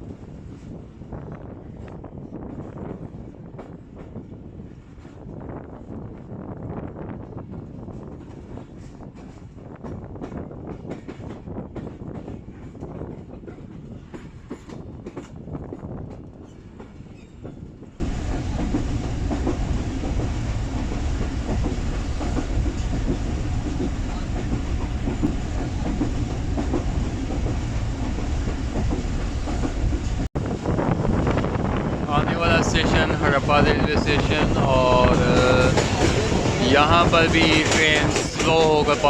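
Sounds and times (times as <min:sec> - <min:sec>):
rushing rumble of moving train: 0:00.0 - 0:39.0
train wheels clicking over rails: 0:08.0 - 0:30.3, 0:32.2 - 0:39.0.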